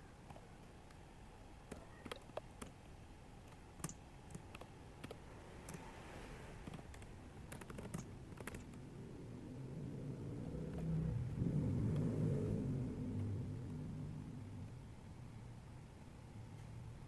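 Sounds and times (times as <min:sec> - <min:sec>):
computer keyboard typing: 0:00.2 - 0:05.8, 0:06.6 - 0:08.8, 0:10.7 - 0:10.9.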